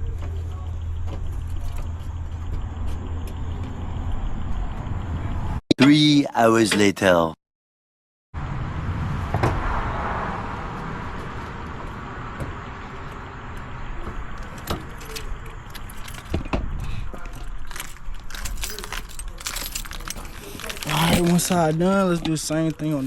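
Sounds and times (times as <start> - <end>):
tools and car parts clinking: 0.2 - 3.5, 14.3 - 23.0.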